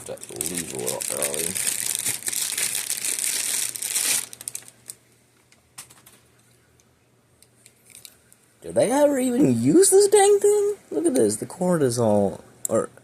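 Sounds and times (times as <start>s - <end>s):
plastic packaging crinkling: 0.0s - 5.0s.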